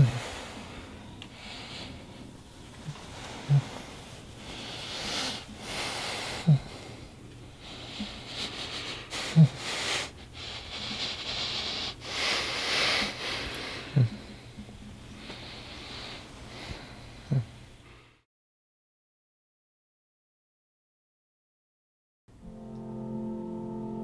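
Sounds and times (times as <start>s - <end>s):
man breathing heavily: 0.0s - 18.2s.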